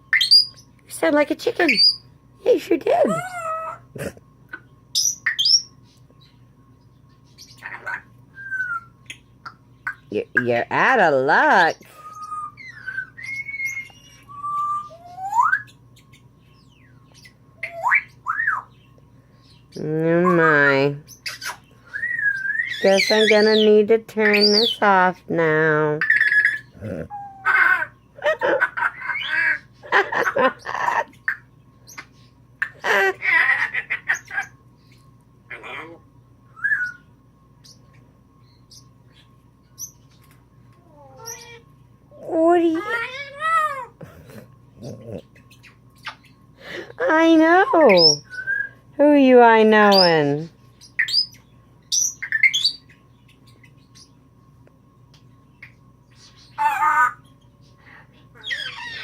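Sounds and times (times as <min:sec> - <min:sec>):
parrot chirping: 0:00.1 - 0:02.1, 0:02.9 - 0:03.9, 0:04.5 - 0:18.9, 0:19.5 - 0:25.1, 0:26.0 - 0:41.8, 0:42.6 - 0:48.8, 0:49.6 - 0:54.3, 0:55.5 - 0:59.0
parrot squawking call: 0:07.5 - 0:09.0, 0:26.0 - 0:29.7, 0:32.6 - 0:34.6, 0:35.5 - 0:36.0, 0:58.4 - 0:59.0
parrot whistling: 0:07.6 - 0:09.0, 0:11.9 - 0:15.8, 0:21.2 - 0:23.7, 0:36.5 - 0:37.1
parrot mimicking laughter: 0:26.0 - 0:31.4, 0:32.6 - 0:34.5, 0:42.7 - 0:45.4, 0:56.6 - 0:57.2, 0:58.4 - 0:59.0.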